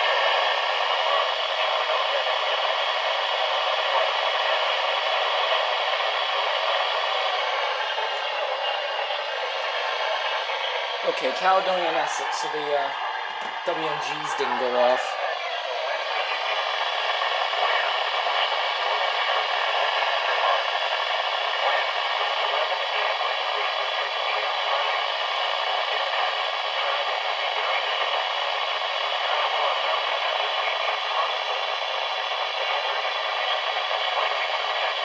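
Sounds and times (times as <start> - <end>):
radio static hiss: 0.0 - 35.0.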